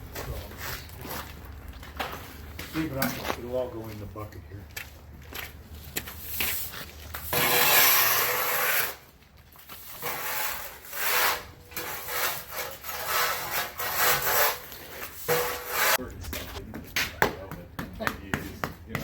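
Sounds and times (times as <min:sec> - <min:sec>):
rough scraping strokes: 0:06.2 - 0:16.3.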